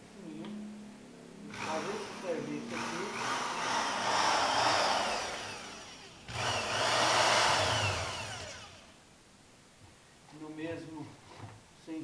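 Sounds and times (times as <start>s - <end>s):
electric drill boring: 1.5s - 9.0s.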